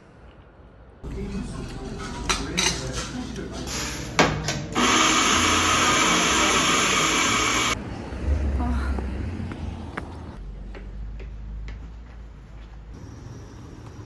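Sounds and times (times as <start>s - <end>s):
dishes and utensils clinking: 1.1s - 5.0s.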